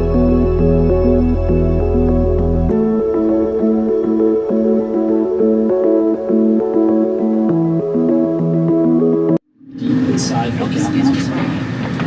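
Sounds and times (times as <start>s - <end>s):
calm ambient synthesizer music: 0.0s - 9.4s.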